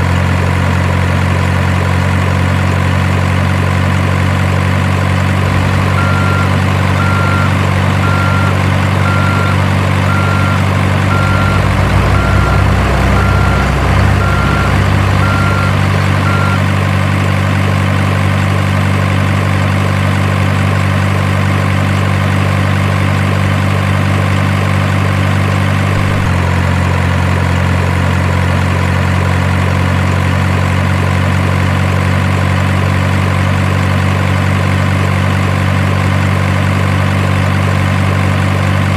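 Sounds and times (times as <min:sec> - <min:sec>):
simulated diesel engine idling: 0:00.0 - 0:38.9
high warning beep: 0:05.5 - 0:16.7, 0:26.0 - 0:26.4.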